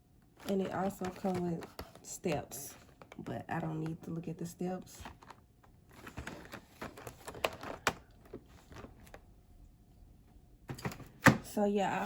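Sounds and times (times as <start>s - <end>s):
packaging clicks and rustles: 0.2s - 4.2s, 4.8s - 9.3s.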